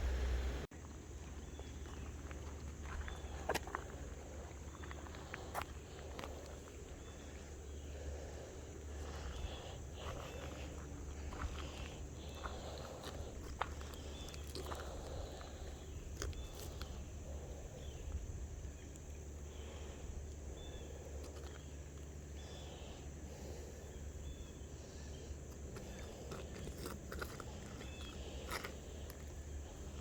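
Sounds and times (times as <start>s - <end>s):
faint crunching and scraping: 0.0s - 30.0s
steady low rumble: 0.0s - 30.0s.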